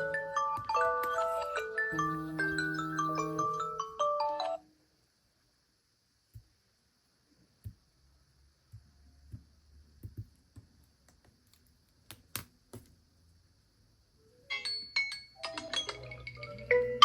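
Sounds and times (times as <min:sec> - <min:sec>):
phone ringtone chime: 0:00.8 - 0:04.6.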